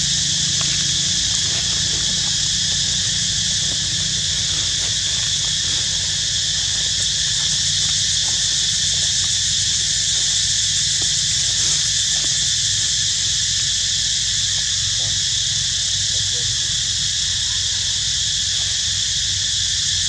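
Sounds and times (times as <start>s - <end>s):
low steady rumble: 0.0s - 11.9s
insect chorus drone: 0.0s - 20.0s.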